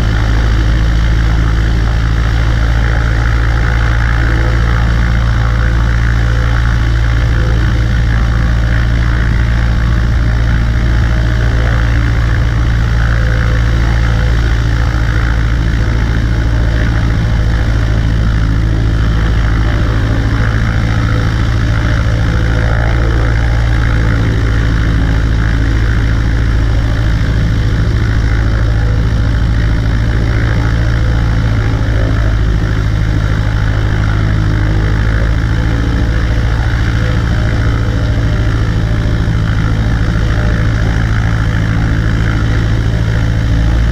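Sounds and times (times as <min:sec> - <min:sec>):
light aircraft engine droning: 0:00.0 - 0:43.9.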